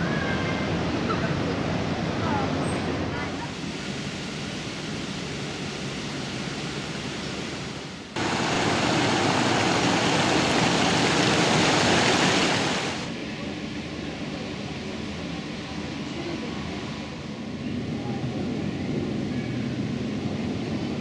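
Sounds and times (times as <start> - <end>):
steady rushing noise: 3.6 - 14.0.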